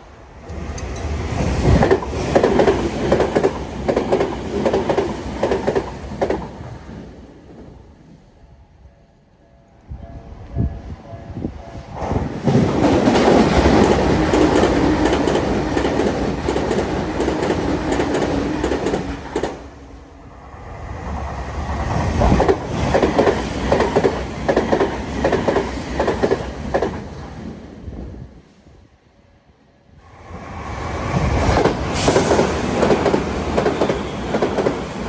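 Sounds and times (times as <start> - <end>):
train wheels rushing on rail: 0.0 - 8.3, 10.6 - 28.3, 30.0 - 35.0
clickety-clack of wheels: 12.0 - 19.6, 31.4 - 35.0.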